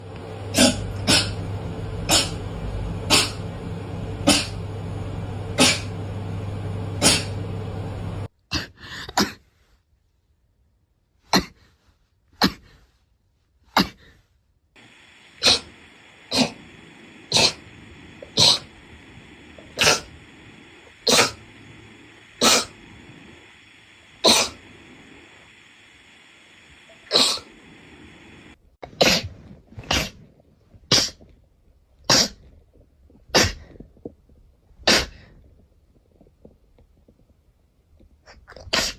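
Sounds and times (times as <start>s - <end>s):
steady hiss: 0.0s - 8.3s, 14.8s - 28.6s
steady hum: 0.0s - 8.3s, 14.8s - 28.6s
short sharp sneezes: 0.6s - 1.4s, 2.1s - 2.4s, 3.1s - 3.4s, 4.3s - 4.6s, 5.6s - 5.9s, 7.0s - 7.4s.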